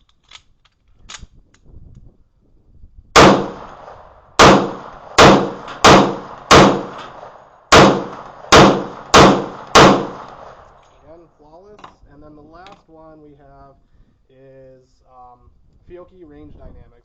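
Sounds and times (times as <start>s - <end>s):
pistol shots with echoing ring: 3.2s - 10.7s.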